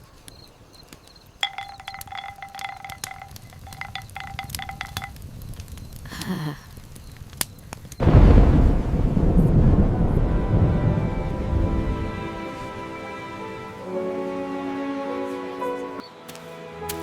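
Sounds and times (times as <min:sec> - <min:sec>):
wind chimes tinkling: 0:01.4 - 0:05.2
storm noise rushing: 0:08.0 - 0:14.3.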